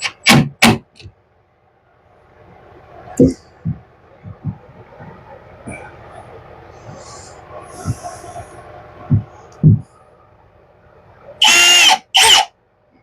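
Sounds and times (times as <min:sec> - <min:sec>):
power drill driving screws: 0:11.4 - 0:12.5.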